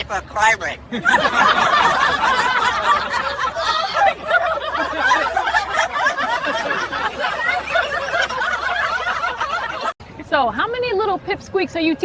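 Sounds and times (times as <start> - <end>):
people laughing together: 0.9 - 10.0.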